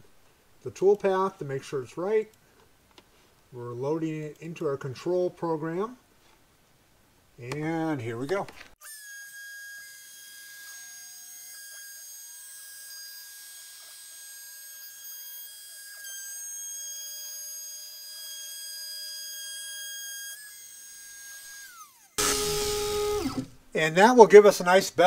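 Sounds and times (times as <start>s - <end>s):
router spindle high whine: 19.7s - 23.6s.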